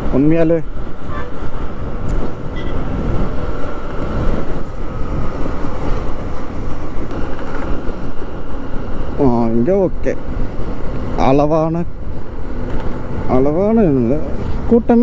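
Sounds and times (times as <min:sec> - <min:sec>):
motorcycle wind and road noise: 0:00.0 - 0:15.0.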